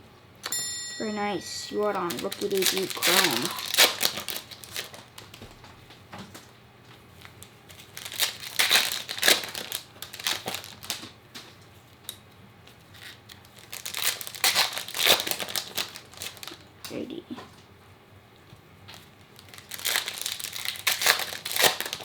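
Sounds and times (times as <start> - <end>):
plastic packaging crinkling: 1.1 - 12.1, 12.7 - 16.7, 18.8 - 22.0.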